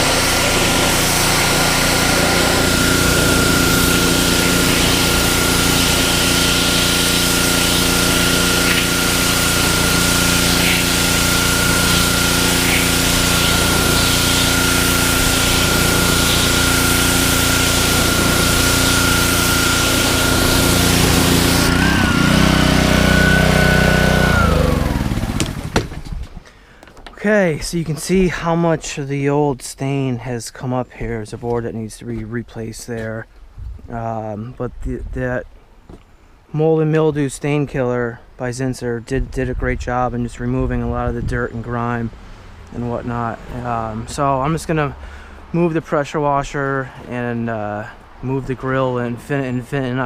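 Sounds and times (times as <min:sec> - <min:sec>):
water spray hiss: 0:00.0 - 0:25.8
pressure washer engine whine: 0:00.0 - 0:26.2, 0:42.1 - 0:46.2.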